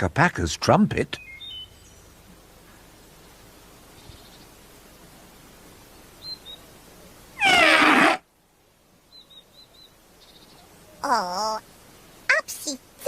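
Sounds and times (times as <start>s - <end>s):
faint bird chirps: 1.2s - 4.6s, 5.9s - 7.9s, 9.0s - 12.3s
toy trumpet squeal: 7.4s - 8.2s.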